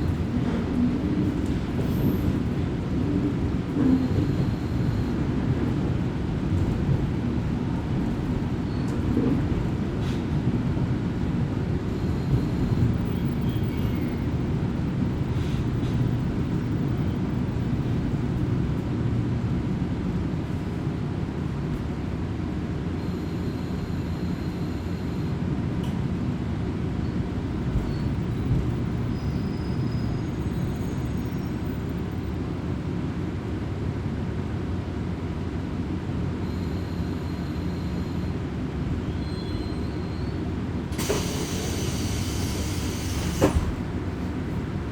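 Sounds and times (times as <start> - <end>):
diesel railcar rumble inside cabin: 0.0 - 44.9
click: 25.8 - 26.0
loud air hiss: 40.9 - 43.8.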